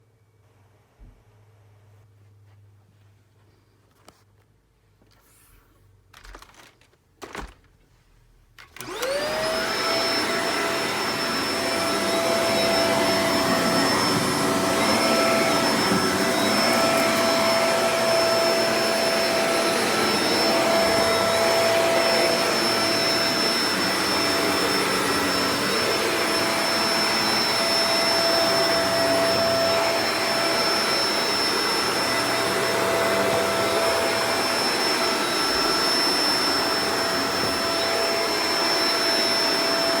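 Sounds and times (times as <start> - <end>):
vacuum cleaner running: 8.6 - 40.0.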